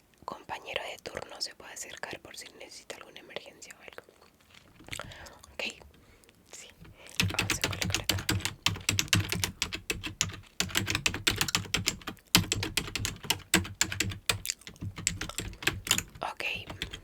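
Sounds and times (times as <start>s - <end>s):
fast typing on a keyboard: 6.8s - 17.0s.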